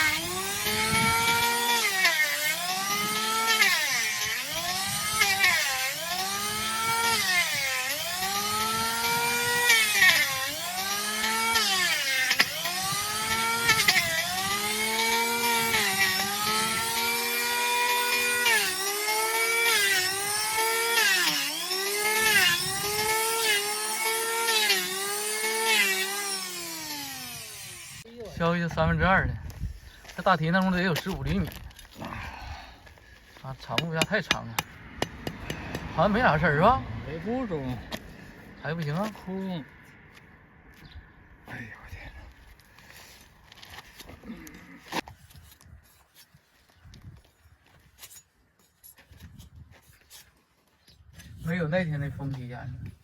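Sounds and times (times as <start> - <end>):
power tool grinding hoof: 0.0 - 28.1, 28.8 - 40.0.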